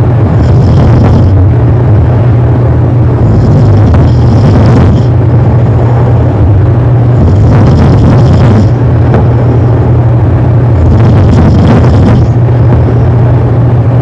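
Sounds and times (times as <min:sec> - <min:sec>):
distorted low drone: 0:00.0 - 0:14.0
man snoring: 0:00.3 - 0:01.4, 0:03.2 - 0:05.2, 0:07.1 - 0:08.8, 0:10.8 - 0:12.4.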